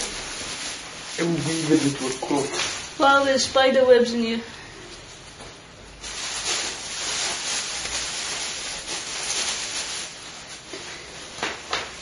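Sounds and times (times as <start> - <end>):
steady hiss: 0.0 - 3.8.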